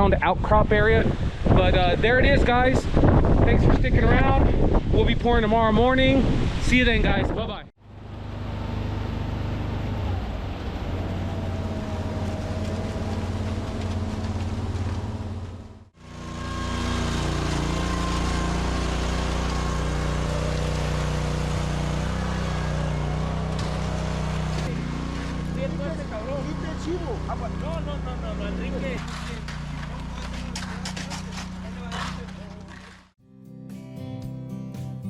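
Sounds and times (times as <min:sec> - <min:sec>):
engine humming: 0:07.8 - 0:33.2.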